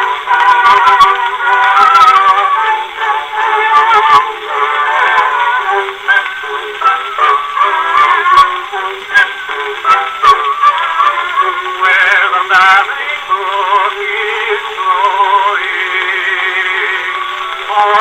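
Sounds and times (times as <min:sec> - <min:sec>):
old recording of singing: 0:00.0 - 0:18.0
record surface noise clicks: 0:00.0 - 0:18.0.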